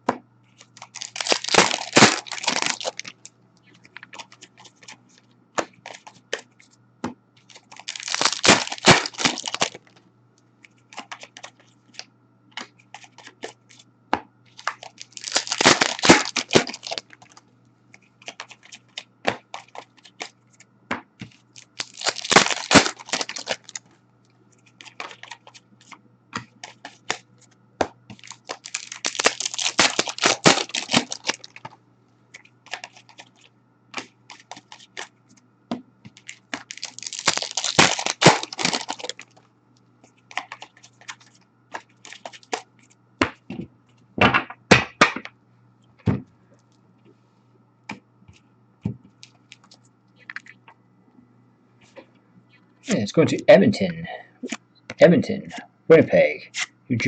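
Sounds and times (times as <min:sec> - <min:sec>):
card pack wrappers ripping: 0:00.6 - 0:03.3, 0:07.5 - 0:10.0, 0:14.5 - 0:17.4, 0:18.2 - 0:20.4, 0:21.6 - 0:23.8, 0:24.8 - 0:25.9, 0:28.1 - 0:31.8, 0:32.6 - 0:35.1, 0:36.2 - 0:39.4, 0:42.0 - 0:42.6
cards clicking and rustling: 0:00.6 - 0:06.7, 0:07.4 - 0:10.0, 0:10.7 - 0:13.8, 0:14.5 - 0:20.6, 0:21.2 - 0:23.9, 0:24.6 - 0:35.4, 0:36.1 - 0:39.4, 0:40.2 - 0:43.5, 0:48.3 - 0:50.8.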